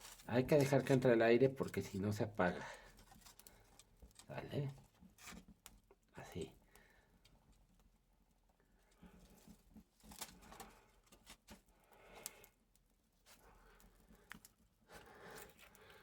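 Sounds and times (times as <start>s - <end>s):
sticks snapping and rustling on campfire: 0.0s - 2.2s, 2.8s - 6.1s, 9.0s - 12.6s, 13.2s - 16.0s.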